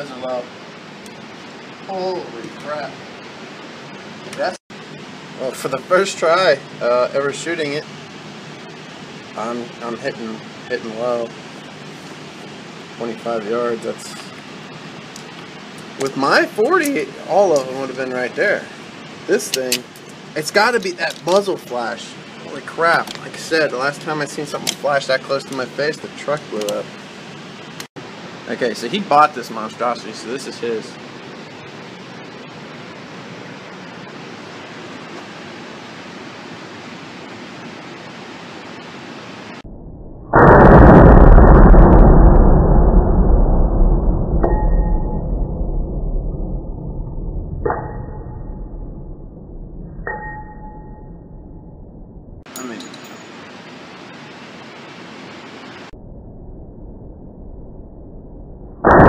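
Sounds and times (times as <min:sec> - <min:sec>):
steady background hiss: 0:00.0 - 0:39.7, 0:52.4 - 0:56.0.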